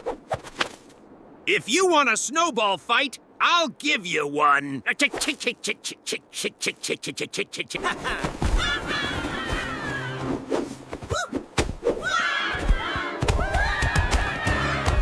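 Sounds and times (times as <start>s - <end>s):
background music: 12.4s - 15.0s.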